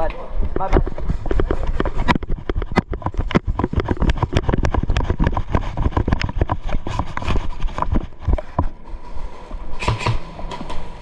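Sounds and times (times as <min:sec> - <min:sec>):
microphone handling noise: 0:00.0 - 0:08.8
wind on microphone: 0:00.3 - 0:08.7.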